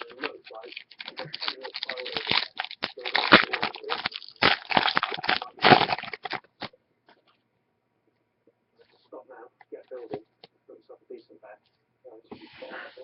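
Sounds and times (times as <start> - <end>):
wrapper crinkling: 0.0 - 6.7.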